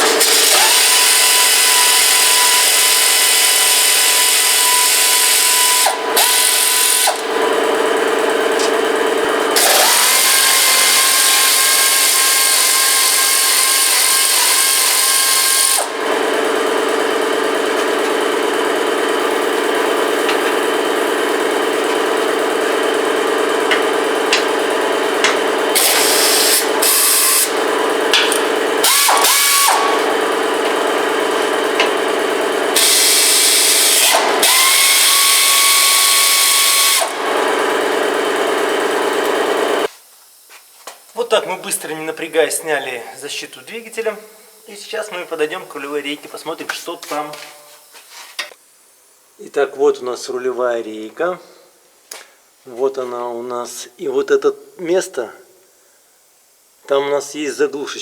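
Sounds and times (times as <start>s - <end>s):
pneumatic air tool whining: 0.0s - 18.7s, 19.6s - 39.9s
air compressor running: 0.0s - 41.4s, 42.0s - 48.4s.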